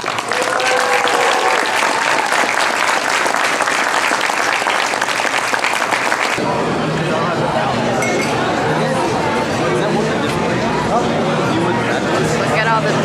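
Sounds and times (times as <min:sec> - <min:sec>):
crowd applauding: 0:00.0 - 0:06.4.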